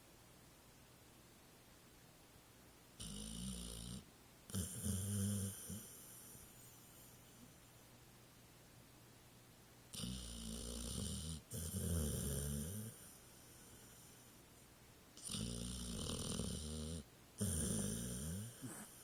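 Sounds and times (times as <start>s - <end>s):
dog snoring: 3.0s - 7.0s, 9.9s - 14.3s, 15.2s - 19.0s.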